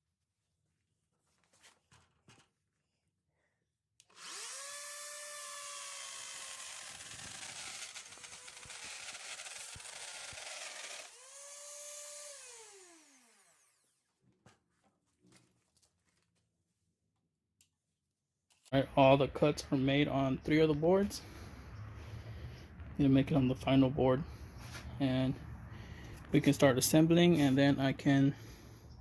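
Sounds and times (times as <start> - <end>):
router cutting wood: 4.0 - 14.1.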